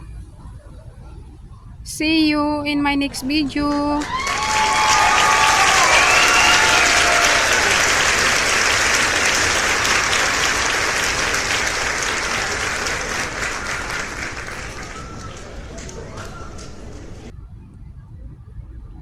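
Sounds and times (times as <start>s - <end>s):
crowd applause: 3.1s - 17.3s.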